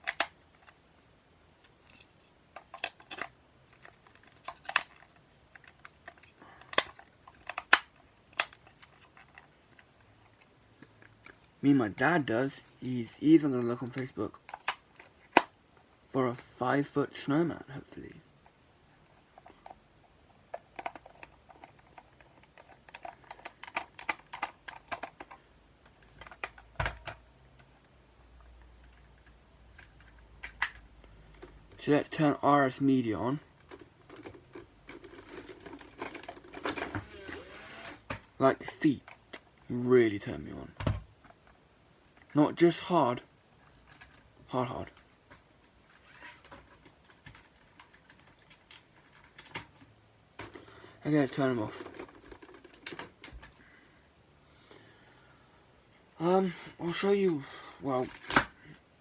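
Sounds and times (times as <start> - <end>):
clicks and knocks of small hard objects: 33.6 - 37.1, 46.4 - 53.6.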